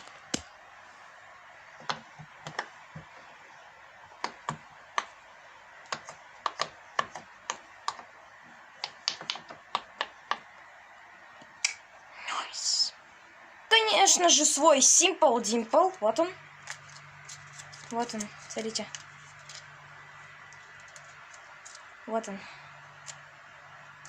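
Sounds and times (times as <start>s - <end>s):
plastic toys clicking and tapping: 1.8s - 3.1s, 5.9s - 8.1s, 8.8s - 10.4s.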